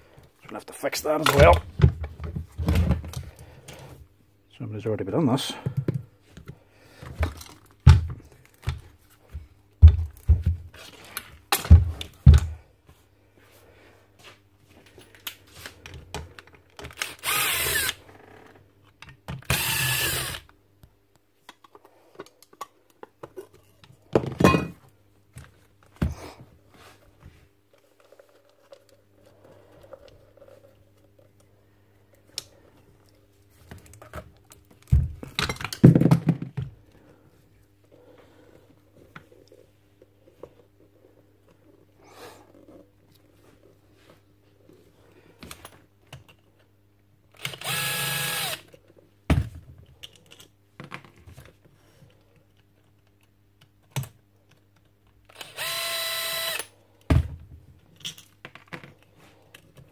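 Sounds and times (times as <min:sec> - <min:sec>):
power tool motor bursts: 0:17.0 - 0:18.0, 0:19.5 - 0:20.4, 0:47.4 - 0:48.6, 0:55.3 - 0:56.7
tool knocks and clunks: 0:24.2 - 0:24.8.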